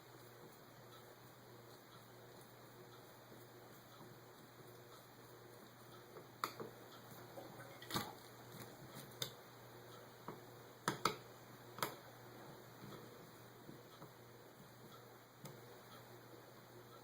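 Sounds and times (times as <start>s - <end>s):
light clicks and taps of tools: 10.2s - 12.0s.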